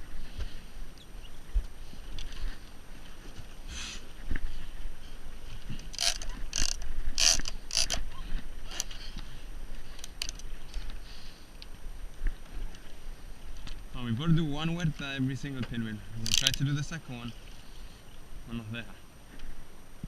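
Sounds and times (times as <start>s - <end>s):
fishing reel ratcheting and whirring: 5.8s - 8.1s, 9.9s - 10.5s, 16.2s - 16.6s.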